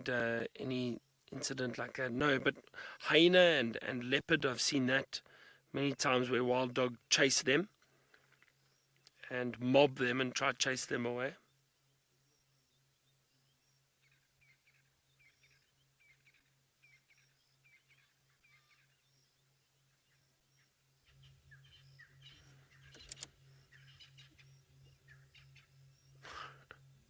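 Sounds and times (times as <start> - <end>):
low pulsing hum: 11.4 - 27.0
high chirping calls: 12.2 - 26.5
sharp click: 22.8 - 23.4.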